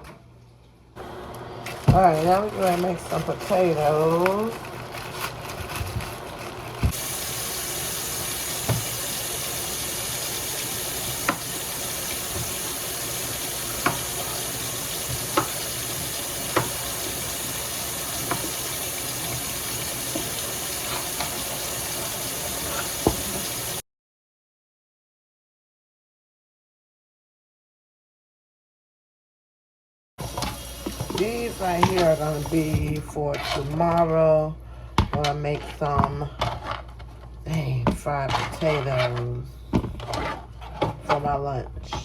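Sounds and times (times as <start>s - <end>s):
kitchen tap running into sink: 6.9s - 23.8s, 30.2s - 32.9s.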